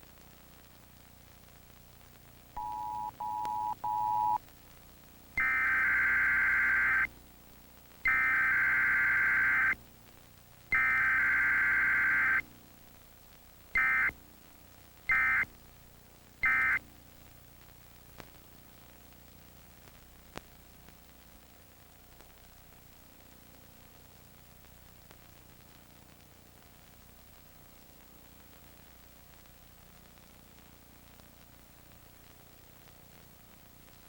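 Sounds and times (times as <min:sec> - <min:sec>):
buzzy data bursts: 0:05.4 - 0:07.1, 0:08.0 - 0:09.8, 0:10.7 - 0:12.5, 0:13.8 - 0:14.2, 0:15.1 - 0:15.4, 0:16.4 - 0:16.8.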